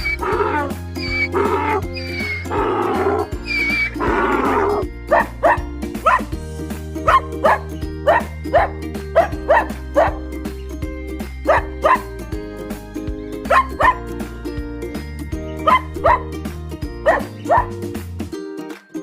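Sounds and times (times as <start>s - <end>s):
background music: 0.0s - 19.0s
dog barking: 5.1s - 6.3s, 7.1s - 10.2s, 11.5s - 12.1s, 13.5s - 14.0s, 15.6s - 16.3s, 17.0s - 17.7s.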